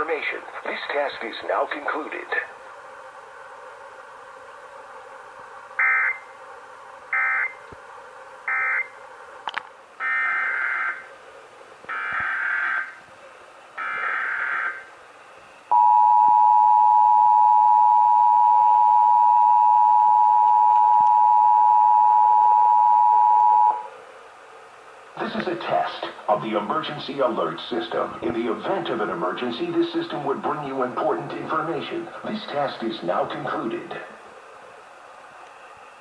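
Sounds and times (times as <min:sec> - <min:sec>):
two-tone attention signal: 0:15.7 - 0:23.8.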